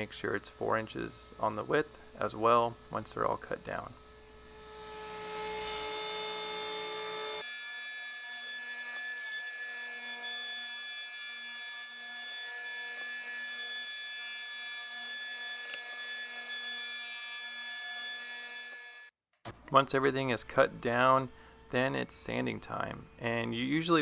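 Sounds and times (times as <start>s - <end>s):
table saw cutting wood: 4.4s - 19.1s, 20.0s - 24.0s.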